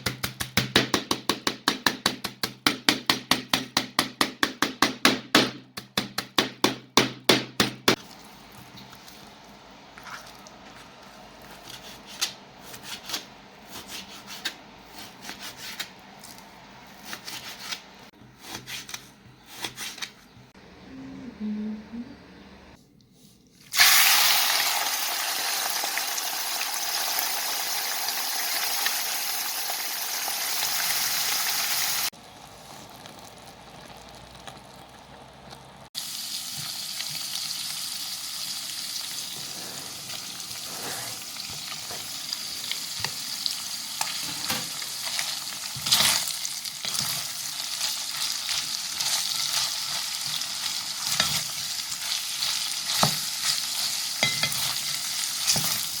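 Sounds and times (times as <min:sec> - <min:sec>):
pork sizzling in a pan: 0:23.7 - 0:35.0, 0:35.9 - 0:56.0.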